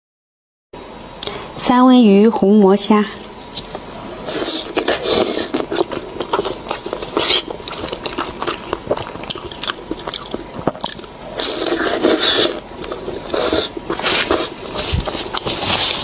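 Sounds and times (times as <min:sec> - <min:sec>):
close chewing with mouth smacks: 0:04.3 - 0:16.0.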